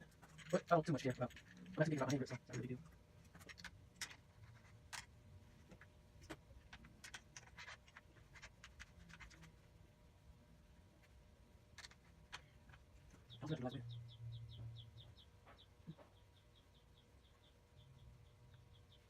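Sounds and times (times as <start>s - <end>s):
faint scratches and light clicks: 0.0s - 9.8s, 11.0s - 13.4s.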